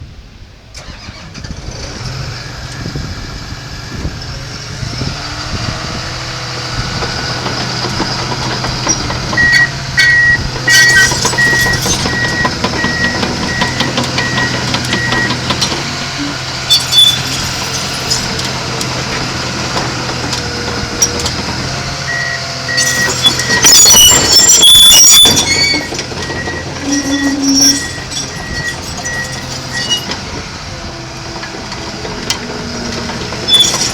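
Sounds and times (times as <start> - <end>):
diesel engine humming: 0.7 - 33.9
steel tracks clanking and squealing: 0.8 - 3.1, 3.9 - 33.9
back-up alarm beeping: 9.4 - 15.7, 22.1 - 30.0.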